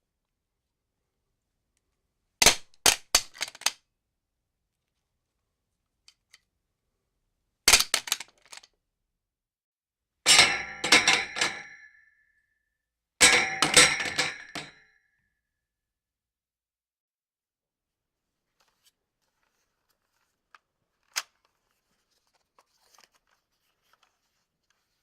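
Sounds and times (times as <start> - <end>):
metallic ring: 10.3 - 12.3, 13.2 - 14.9.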